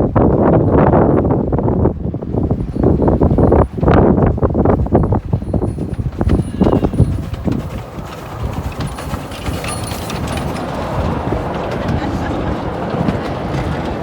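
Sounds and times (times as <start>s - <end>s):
miniature train rumbling: 0.0s - 14.0s
wind buffeting microphone: 0.0s - 14.0s
faint track clicks: 6.3s - 14.0s.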